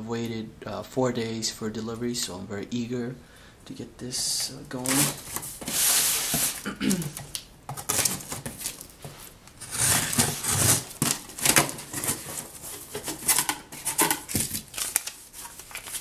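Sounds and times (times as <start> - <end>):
tape tearing: 4.8 - 16.0
cardboard box being opened: 9.6 - 16.0.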